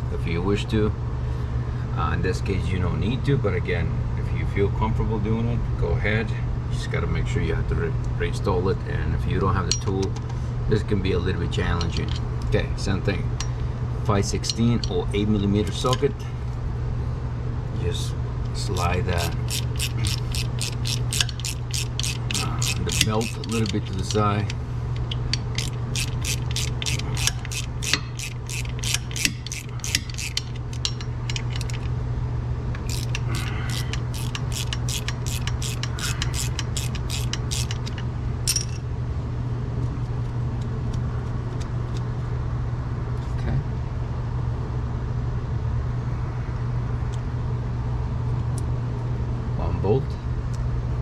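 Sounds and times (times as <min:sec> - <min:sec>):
steady low hum: 0:00.0 - 0:51.0
hand ratchet clicking: 0:18.7 - 0:31.9, 0:32.8 - 0:38.7.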